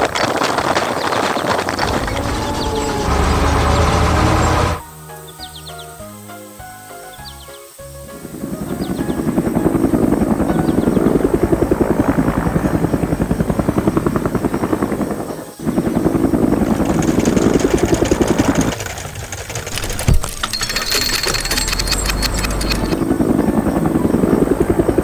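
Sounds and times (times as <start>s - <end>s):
machine chopping pulse: 1.8s - 4.8s, 16.8s - 23.0s.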